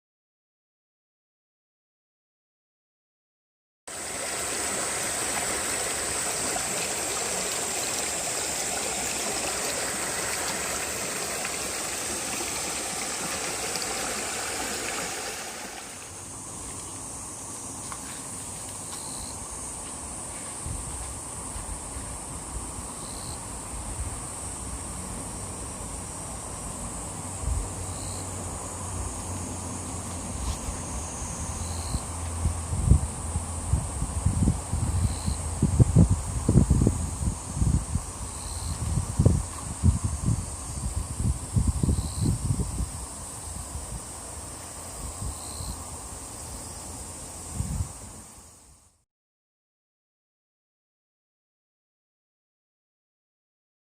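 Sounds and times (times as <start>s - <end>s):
stream babbling and trickling: 3.9s - 21.6s
insects droning: 3.9s - 49.0s
wind on microphone: 20.6s - 22.5s, 32.4s - 44.2s, 47.5s - 48.2s.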